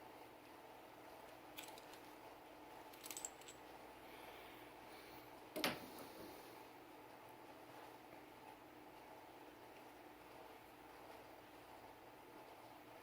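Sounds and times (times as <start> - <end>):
faint steady hum: 0.0 - 13.0
pistol parts clicking: 1.6 - 2.1, 2.9 - 3.6.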